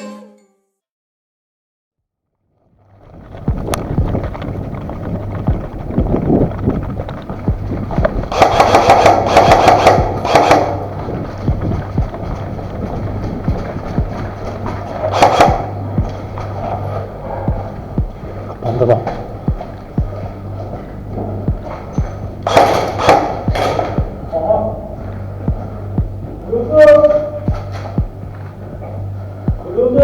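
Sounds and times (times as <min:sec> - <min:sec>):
low hum: 0:02.5 - 0:30.0
movement noise on body microphone: 0:02.7 - 0:30.0
footsteps and gear knocks: 0:02.8 - 0:30.0
airsoft gun fire: 0:08.3 - 0:10.9, 0:15.1 - 0:15.7, 0:22.4 - 0:24.1.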